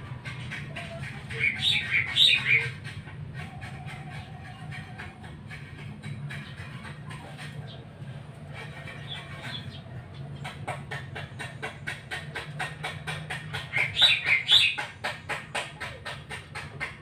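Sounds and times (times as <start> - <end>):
bird calling with sharp ticks: 9.0 - 17.0
bird chirps: 13.8 - 14.9.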